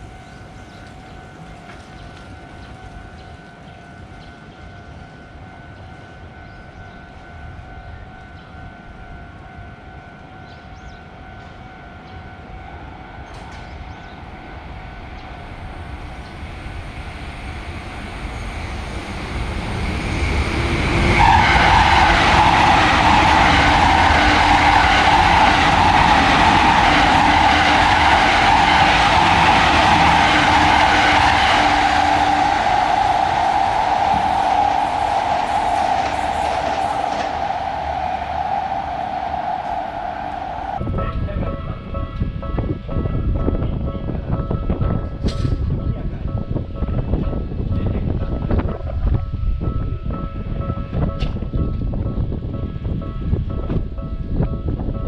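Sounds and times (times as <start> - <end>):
train passing: 0.0 - 42.5
steady tone: 14.6 - 40.8.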